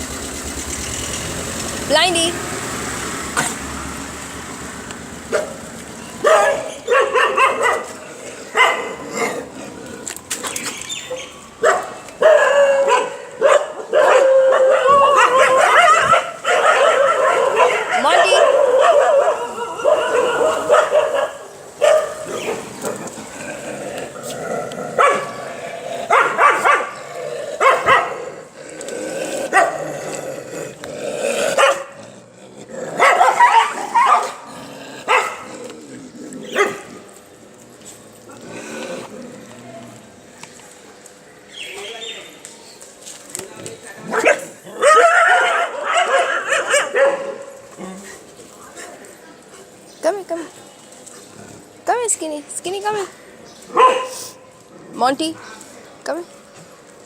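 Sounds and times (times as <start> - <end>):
puppies barking: 5.1 - 9.8, 10.4 - 23.4, 24.9 - 28.6, 29.4 - 30.0, 31.5 - 32.2, 32.9 - 35.8, 36.4 - 37.1, 44.0 - 47.7, 53.6 - 54.6
puppies yelping and whining: 14.0 - 21.3.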